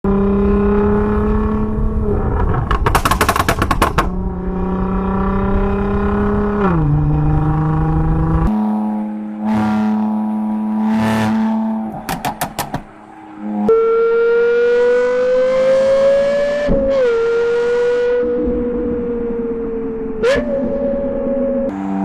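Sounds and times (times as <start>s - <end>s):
sports car engine revving: 0.1s - 12.5s
exhaust pops: 2.3s - 4.2s.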